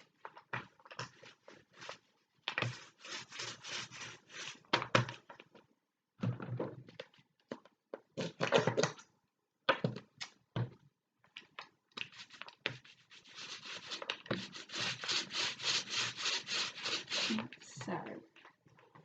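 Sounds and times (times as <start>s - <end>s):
paintbrush scrubbing on board: 2.6s - 4.7s, 12.1s - 17.6s.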